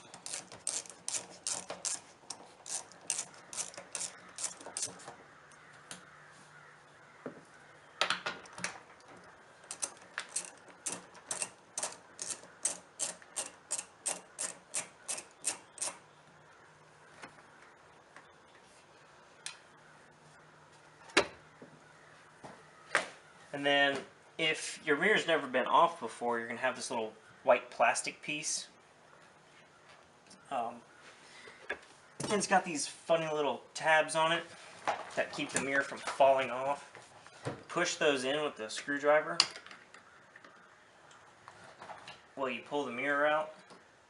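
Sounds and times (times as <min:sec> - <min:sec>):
socket ratchet clicking: 0:00.1 - 0:02.0, 0:02.6 - 0:04.9, 0:09.7 - 0:16.0.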